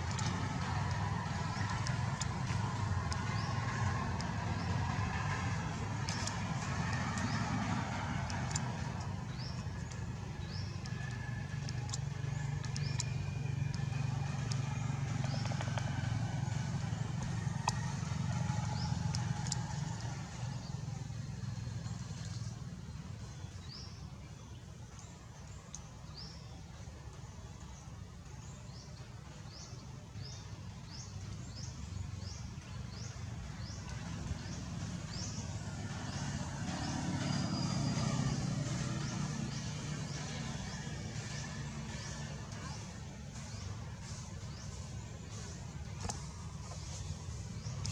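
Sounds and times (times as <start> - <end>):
low engine rumble: 0.0 - 47.9.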